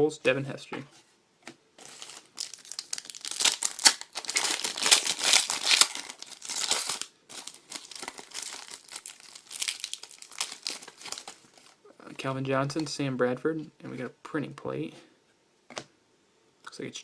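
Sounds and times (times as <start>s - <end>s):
foil wrapper crinkling and tearing: 1.8s - 11.8s.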